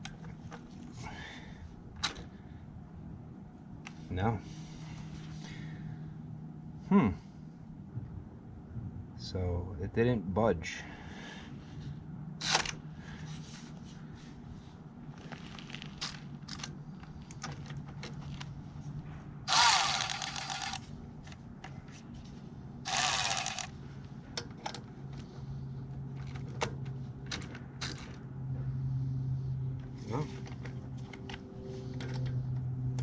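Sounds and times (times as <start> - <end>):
steady low hum: 18.6 - 21.2, 22.3 - 24.4
power ratchet whirring: 19.5 - 20.8, 22.9 - 23.7.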